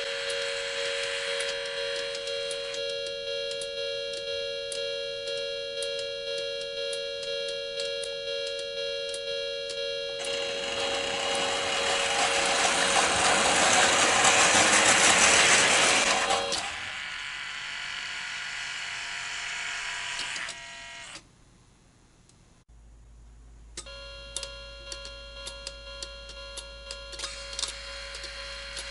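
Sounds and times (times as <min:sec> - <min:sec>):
model train wheels on track: 0:00.0 - 0:02.8, 0:10.2 - 0:21.2
crossing signal warning bell: 0:00.0 - 0:13.7, 0:23.8 - 0:28.9.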